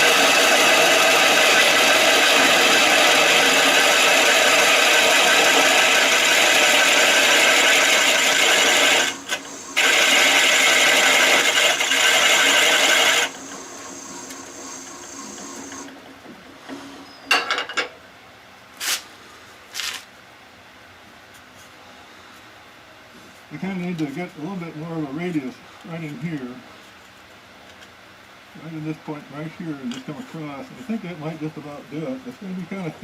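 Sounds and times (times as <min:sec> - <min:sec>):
lathe gouge scraping wood: 0:00.0 - 0:15.8
machine hum: 0:00.0 - 0:17.3.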